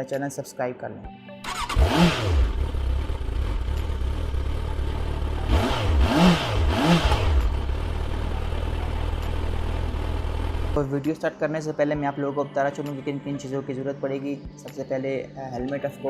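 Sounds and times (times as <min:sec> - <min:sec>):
motorcycle engine idling: 0:01.5 - 0:10.8
motorcycle throttle blips: 0:01.5 - 0:10.8.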